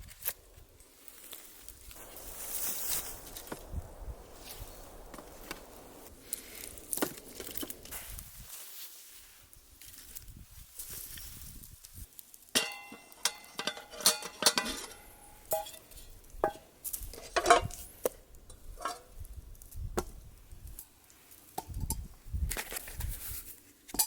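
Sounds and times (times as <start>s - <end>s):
metal cookware clinking: 12.6s - 16.6s, 17.2s - 17.8s.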